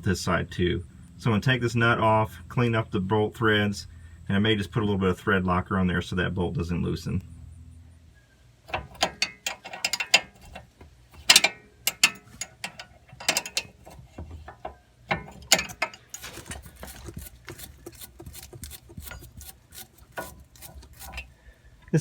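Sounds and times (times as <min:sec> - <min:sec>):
ratchet wrench clicking: 0:08.7 - 0:21.3.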